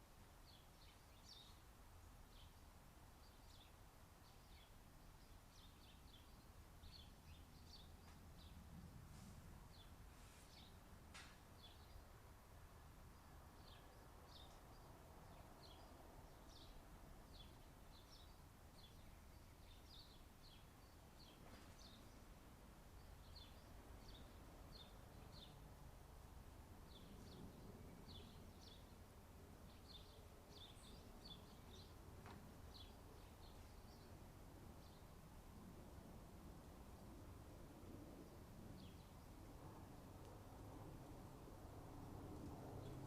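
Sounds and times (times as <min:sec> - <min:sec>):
small birds chirping: 0:00.4 - 0:08.8, 0:09.7 - 0:25.7, 0:26.8 - 0:36.0.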